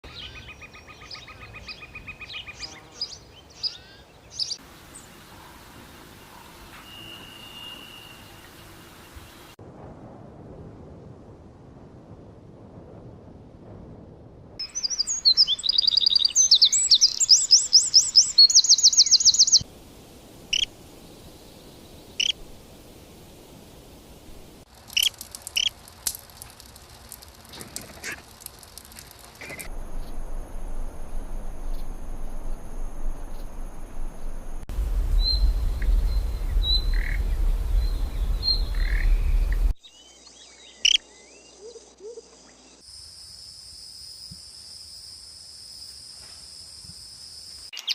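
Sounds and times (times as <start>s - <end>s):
bird calls: 0.1s - 9.5s, 14.6s - 19.6s, 20.3s - 22.5s, 34.2s - 42.8s
bird chirps and trills: 14.6s - 19.6s, 20.4s - 22.4s, 34.9s - 42.3s
low rumble: 29.6s - 39.8s
steady high whines: 29.7s - 39.8s.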